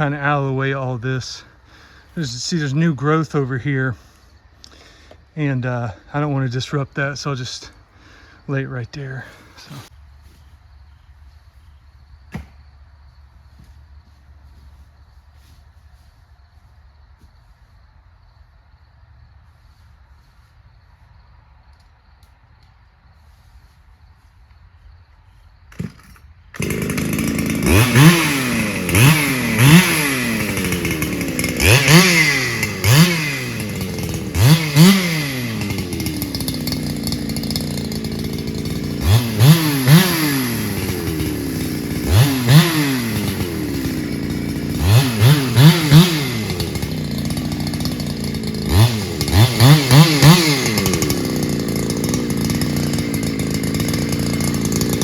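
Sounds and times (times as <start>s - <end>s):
chainsaw idling and revving: 0.0s - 10.0s, 25.7s - 55.0s.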